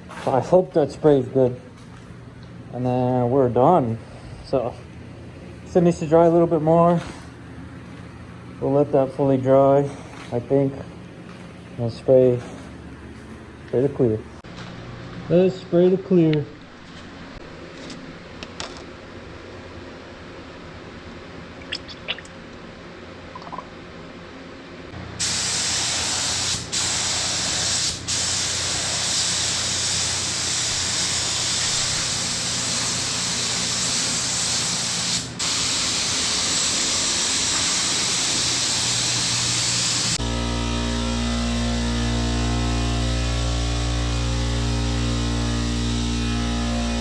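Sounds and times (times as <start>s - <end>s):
paint spray gun hissing: 25.2s - 47.0s.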